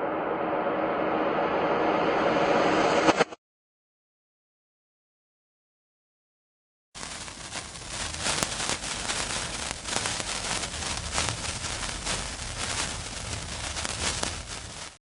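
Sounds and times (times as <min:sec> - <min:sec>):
fireworks crackling: 0:07.0 - 0:15.0
loud firework cracks: 0:07.0 - 0:15.0.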